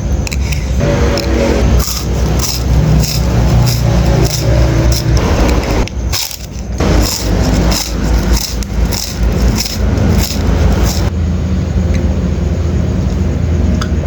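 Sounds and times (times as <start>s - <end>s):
crunchy chewing: 0.0s - 11.1s
steady low hum: 0.0s - 14.0s.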